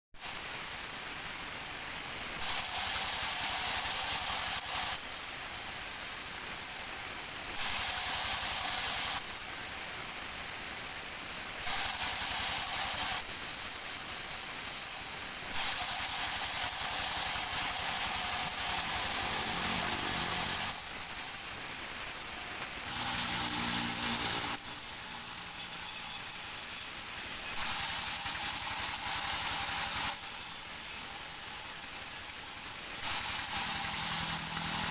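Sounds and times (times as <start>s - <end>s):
sawmill machinery din: 2.4s - 5.9s, 7.5s - 9.3s, 11.6s - 34.9s.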